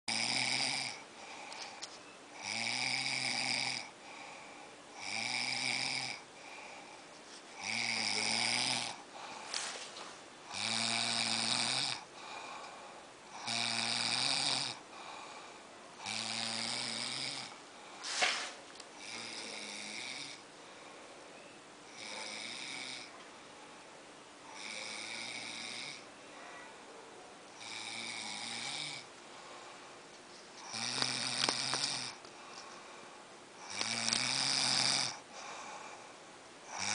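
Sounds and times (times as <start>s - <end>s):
person snoring: 0.1s - 1.8s, 2.4s - 6.9s, 7.6s - 9.9s, 10.5s - 20.4s, 21.9s - 23.1s, 24.5s - 26.1s, 27.6s - 29.7s, 30.6s - 32.6s, 33.6s - 36.0s, 36.6s - 36.9s.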